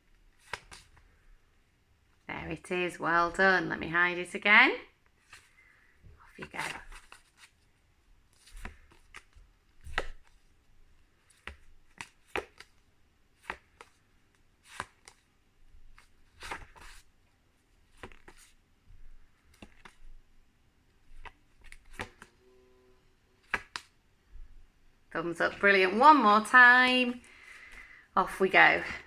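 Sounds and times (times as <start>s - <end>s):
paper cards flicked through: 0.4s - 1.0s, 21.1s - 22.3s, 23.4s - 23.9s.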